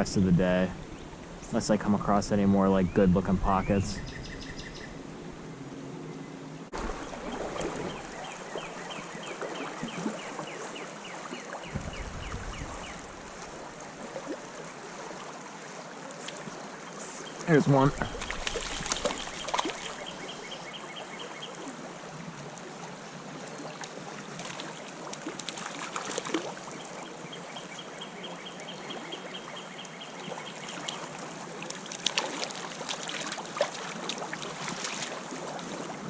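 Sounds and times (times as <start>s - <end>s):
creek water flowing: 0.0s - 36.0s
fish splashing: 6.7s - 10.2s, 11.2s - 15.4s, 18.0s - 20.4s, 31.8s - 36.0s.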